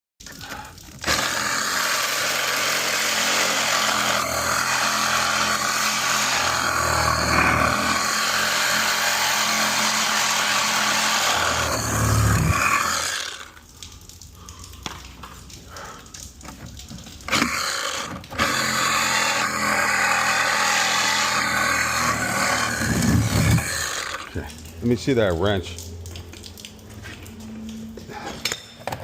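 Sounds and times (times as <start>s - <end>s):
reciprocating saw cutting metal pipe: 1.0s - 13.6s, 17.3s - 24.3s.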